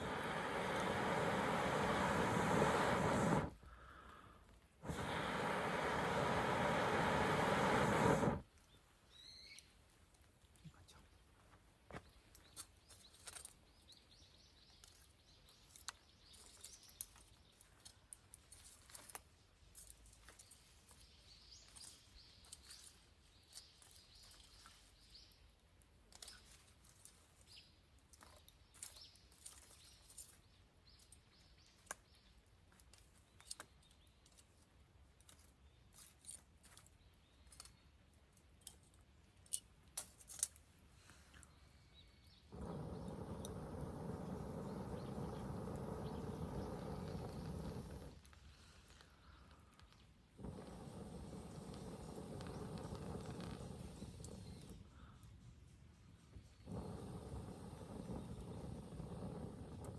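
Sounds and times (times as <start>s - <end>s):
campfire crackling and popping: 0.0s - 8.6s, 42.5s - 48.4s, 49.4s - 54.9s, 56.6s - 59.9s.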